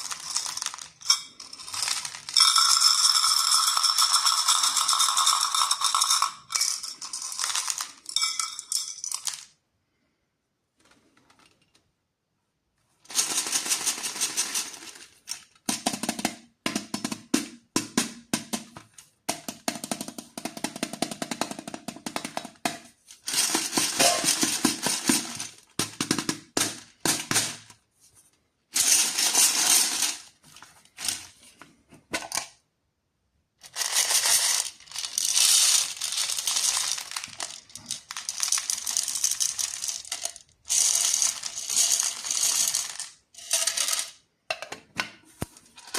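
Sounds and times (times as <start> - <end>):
plastic wrappers crinkling: 0.0 - 2.8, 23.2 - 25.7, 33.7 - 42.8.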